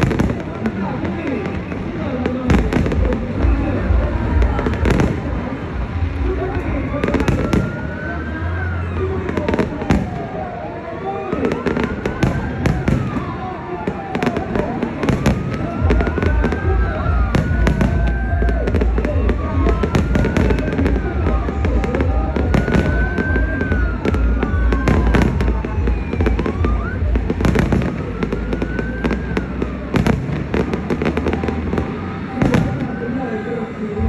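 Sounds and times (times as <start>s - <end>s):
fireworks bangs and crackles: 0.0s - 34.0s
fireworks whistles: 11.1s - 33.1s.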